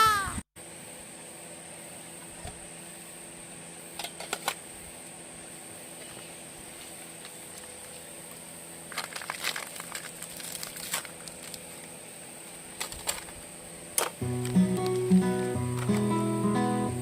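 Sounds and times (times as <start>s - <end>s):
faint hum with high whine: 0.0s - 17.0s
crinkling rustles: 6.7s - 12.0s, 12.7s - 13.4s, 14.0s - 16.3s.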